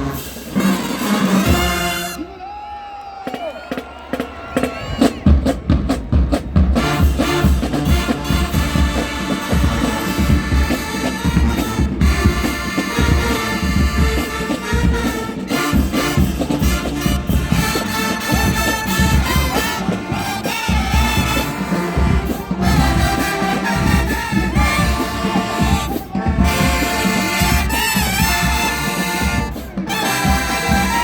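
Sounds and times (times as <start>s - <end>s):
marching band brass playing: 0.0s - 2.4s, 3.3s - 31.0s.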